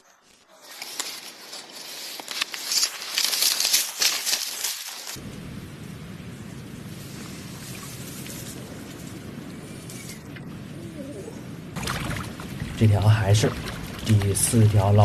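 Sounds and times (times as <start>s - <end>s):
low rumble of wind: 5.0s - 15.0s
crackling splashy clicks: 11.8s - 15.0s.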